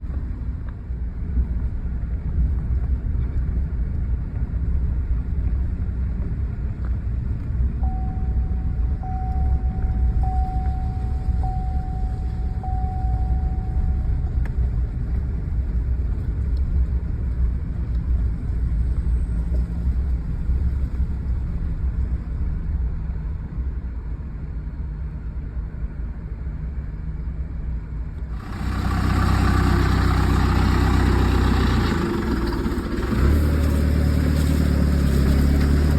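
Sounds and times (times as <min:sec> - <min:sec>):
vehicle engine rumbling: 0:00.0 - 0:35.9
beeps: 0:07.8 - 0:14.4.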